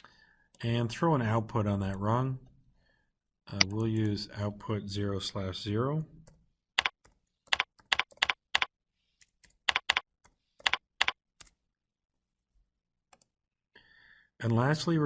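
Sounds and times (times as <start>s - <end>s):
computer keyboard keystrokes: 6.3s - 11.6s.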